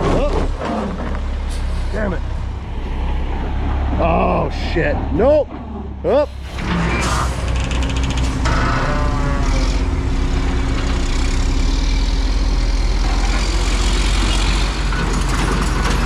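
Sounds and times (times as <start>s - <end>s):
diesel engine running: 0.0s - 16.0s
falling whine: 6.1s - 14.0s.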